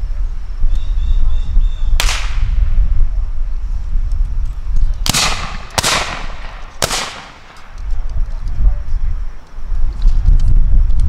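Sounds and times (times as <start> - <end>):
musket shots echoing: 5.0 - 7.8.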